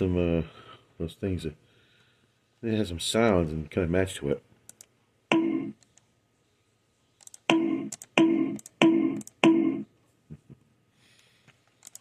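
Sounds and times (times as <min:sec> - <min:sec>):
man making mouth noises: 0:07.5 - 0:10.6.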